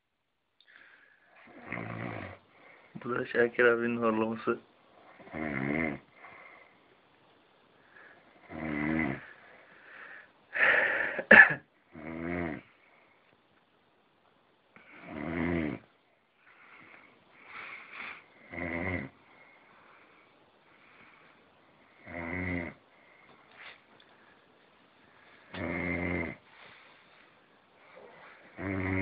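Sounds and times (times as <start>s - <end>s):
faint breathing: 0.6s - 1.6s, 2.4s - 3.0s, 6.1s - 7.0s, 7.7s - 8.5s, 9.2s - 11.3s, 16.4s - 18.5s, 19.1s - 22.1s, 22.8s - 25.7s, 26.4s - 29.0s
man snoring: 1.4s - 2.4s, 5.1s - 6.2s, 8.4s - 9.4s, 11.9s - 12.7s, 14.8s - 15.9s, 18.4s - 19.2s, 22.0s - 22.8s, 25.5s - 26.4s, 28.5s - 29.0s
sharp snort: 1.4s - 2.4s, 5.2s - 6.0s, 25.5s - 26.4s.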